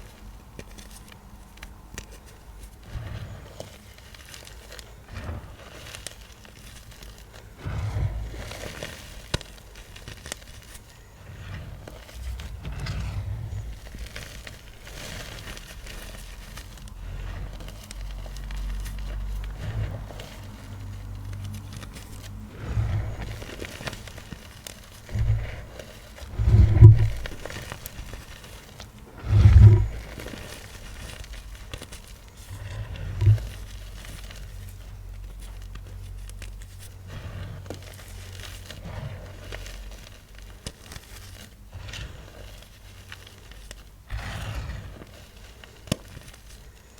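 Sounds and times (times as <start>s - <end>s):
chalk blocks crunching: 0.0s - 46.9s
low steady hum: 6.4s - 42.4s
chalk blocks being crushed: 37.6s - 46.9s.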